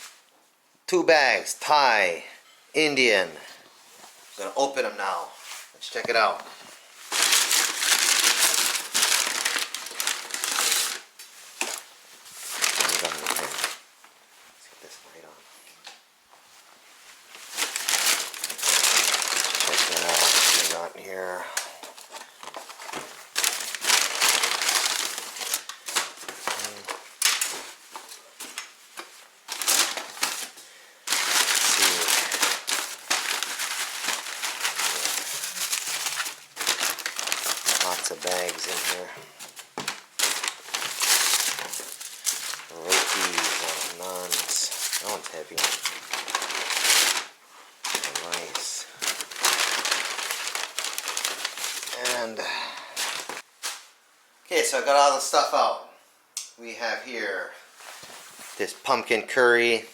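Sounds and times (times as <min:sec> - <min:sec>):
paper bags rustling: 0:03.9 - 0:14.6, 0:16.8 - 0:53.9.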